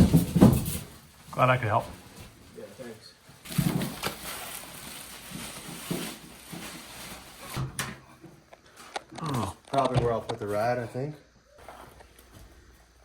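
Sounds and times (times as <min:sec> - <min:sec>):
rustling: 0:00.0 - 0:07.7.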